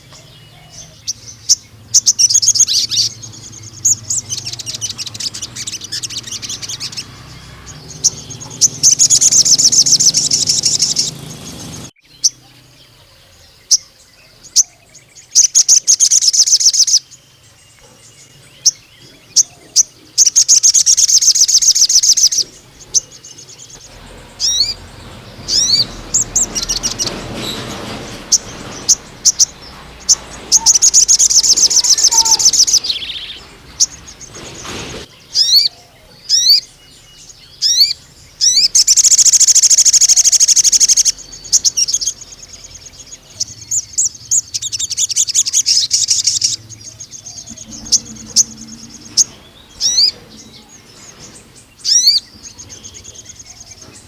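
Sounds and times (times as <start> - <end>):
bird high-pitched trills: 0.0 - 34.4, 35.2 - 54.0
bird sharp chips: 1.4 - 12.0, 18.7 - 35.7.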